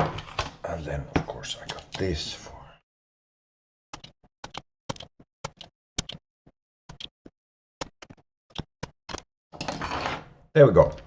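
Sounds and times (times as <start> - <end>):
small clicks and taps: 4.0 - 6.2.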